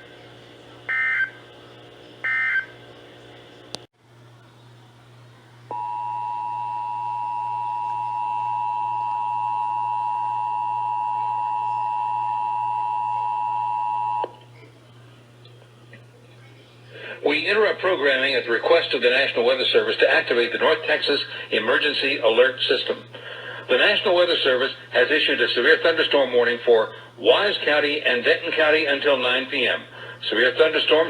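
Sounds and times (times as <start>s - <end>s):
steady two-tone attention signal: 0.9s - 1.4s, 2.2s - 2.8s, 5.7s - 14.2s.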